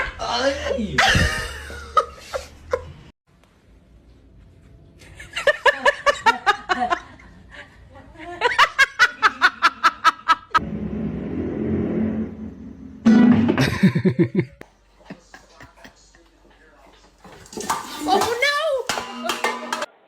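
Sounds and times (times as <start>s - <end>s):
person laughing: 13.6s - 16.3s.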